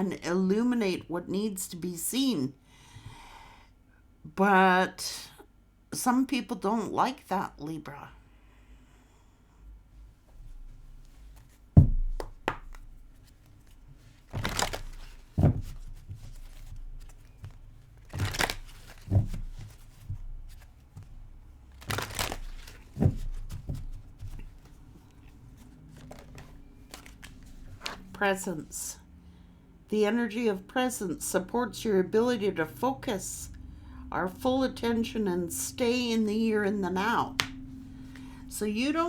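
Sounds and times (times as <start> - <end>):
cards rustling: 12.5 - 28.2.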